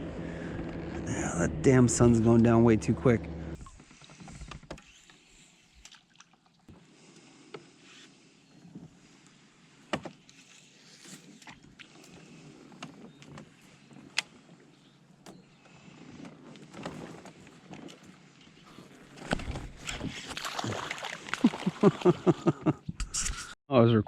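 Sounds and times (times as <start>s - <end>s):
small clicks and knocks on kayak: 11.2s - 14.6s.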